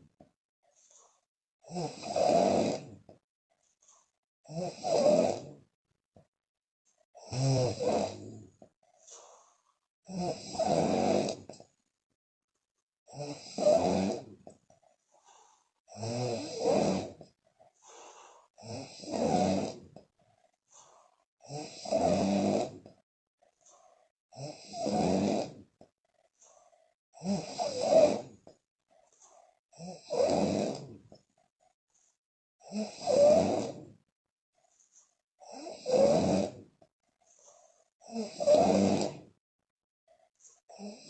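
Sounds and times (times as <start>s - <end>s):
woman snoring: 1.6s - 3.2s, 4.4s - 5.7s, 7.2s - 8.7s, 10.0s - 11.7s, 13.1s - 14.6s, 15.9s - 17.4s, 18.3s - 20.1s, 21.4s - 23.0s, 24.3s - 25.9s, 27.2s - 28.6s, 29.7s - 31.2s, 32.6s - 34.0s, 35.4s - 36.9s, 38.0s - 39.4s, 40.6s - 41.0s.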